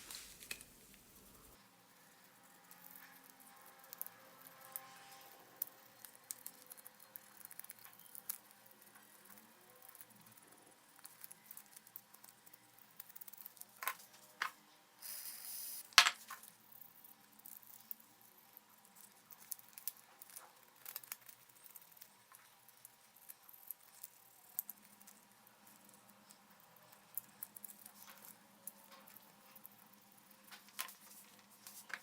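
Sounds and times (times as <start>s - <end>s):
short hiss: 15.0s - 16.0s.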